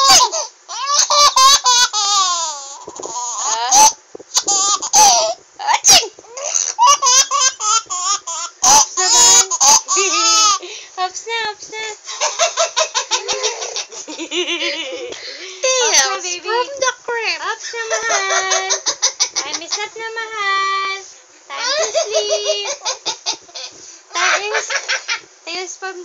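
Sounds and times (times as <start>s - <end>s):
baby laughing: 0.0s - 10.6s, 12.1s - 16.2s, 17.6s - 19.9s, 21.6s - 25.2s.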